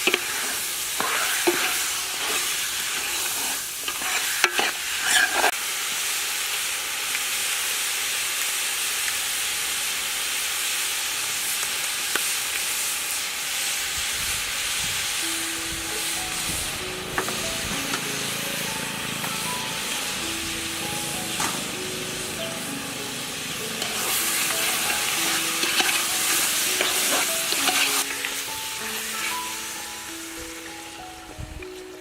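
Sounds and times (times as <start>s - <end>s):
food sizzling in a pan: 0.0s - 32.0s
soft musical notes: 15.2s - 32.0s.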